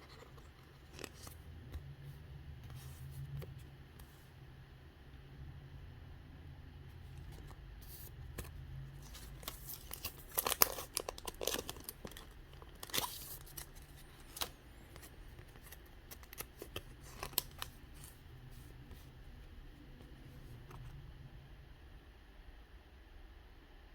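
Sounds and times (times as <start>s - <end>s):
cards being handled: 0.0s - 1.8s, 7.1s - 19.1s
foil wrapper crinkling and tearing: 9.0s - 18.1s.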